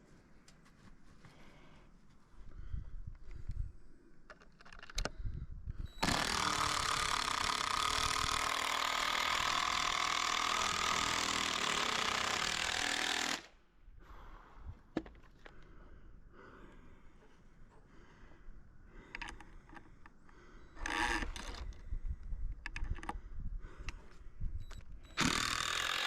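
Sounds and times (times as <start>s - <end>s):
handheld power tool running: 6.0s - 13.6s, 25.1s - 26.0s.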